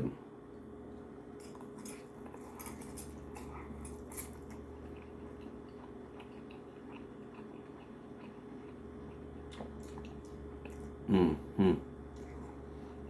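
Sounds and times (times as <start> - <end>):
steady low hum: 0.0 - 13.0
chewing: 1.4 - 11.0, 12.1 - 13.0.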